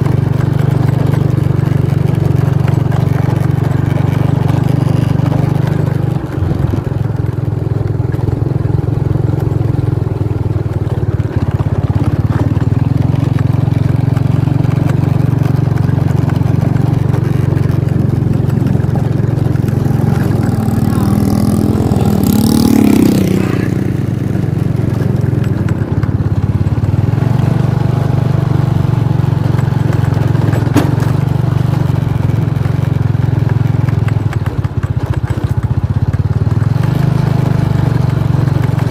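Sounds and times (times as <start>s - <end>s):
vehicle engine and road noise: 0.0s - 38.9s
vehicle passing close: 12.4s - 30.0s.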